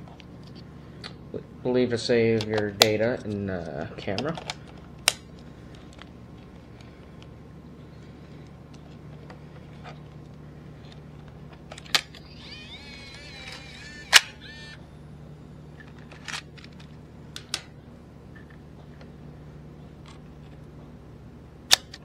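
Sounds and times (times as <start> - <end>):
low steady hum: 0.0 - 22.0
warbling chirp: 12.2 - 14.8.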